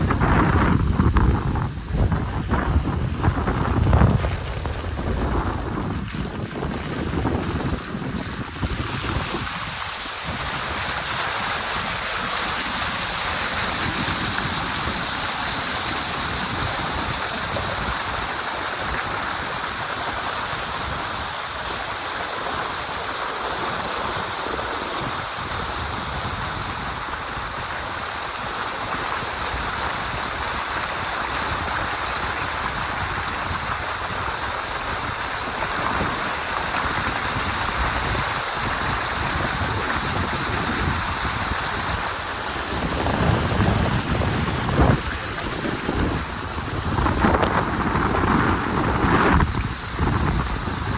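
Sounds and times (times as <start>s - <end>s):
storm wind and water rushing: 0.0s - 50.9s.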